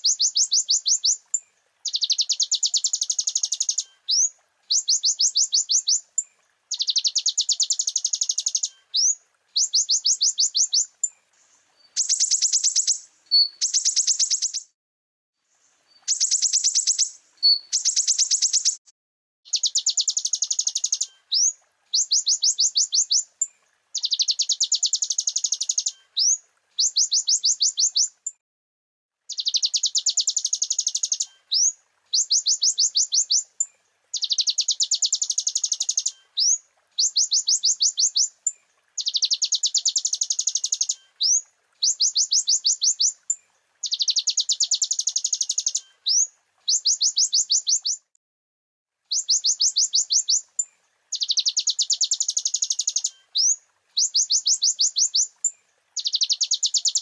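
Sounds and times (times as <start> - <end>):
sunbird high-pitched trills: 0.0 - 11.2, 11.8 - 14.8, 15.9 - 18.8, 19.5 - 23.3, 24.0 - 28.4, 29.3 - 48.1, 49.1 - 57.0.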